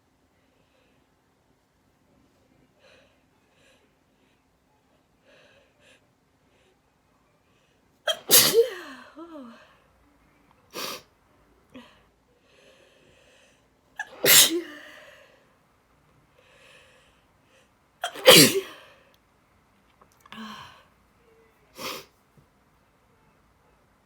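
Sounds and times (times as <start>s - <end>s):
woman sneezing: 8.1s - 9.1s, 14.0s - 15.0s, 18.0s - 18.9s, 21.8s - 22.1s
faint breathing: 11.8s - 13.8s, 16.3s - 17.8s.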